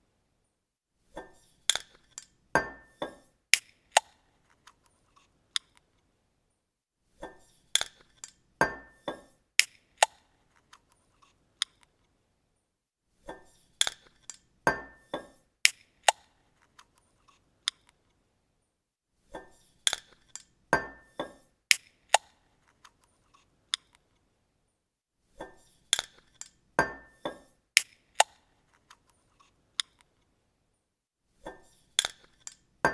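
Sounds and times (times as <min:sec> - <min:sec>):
bottle cap clicking open: 0:27.8 - 0:28.4.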